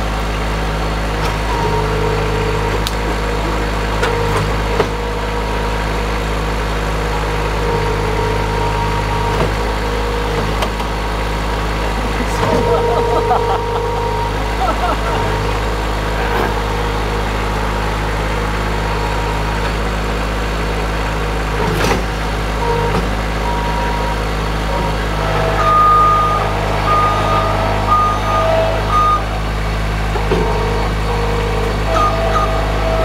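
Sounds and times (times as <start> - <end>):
loader engine running: 0.0 - 33.0
backup alarm beeping: 7.2 - 11.2, 12.0 - 19.9, 22.6 - 33.0.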